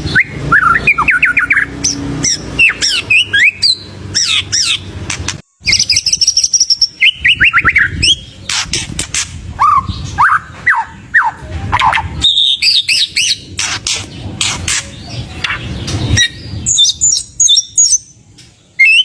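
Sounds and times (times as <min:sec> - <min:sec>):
songbird singing: 0:00.0 - 0:19.0.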